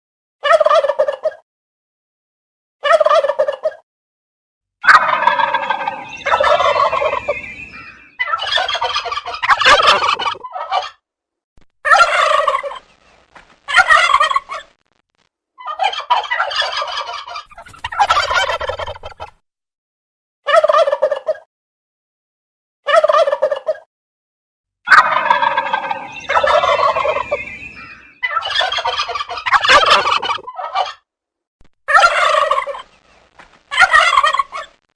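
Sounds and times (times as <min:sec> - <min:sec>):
turkey gobbling: 0:00.4 - 0:01.4, 0:02.8 - 0:03.8, 0:04.8 - 0:11.0, 0:11.9 - 0:12.9, 0:13.7 - 0:14.7, 0:15.6 - 0:19.4, 0:20.5 - 0:21.5, 0:22.9 - 0:23.9, 0:24.9 - 0:31.0, 0:31.9 - 0:33.0, 0:33.7 - 0:34.8.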